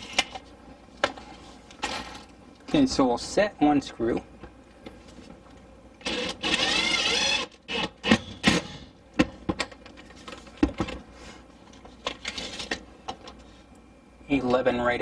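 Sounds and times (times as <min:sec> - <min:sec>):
power drill driving screw: 0:06.0 - 0:08.8.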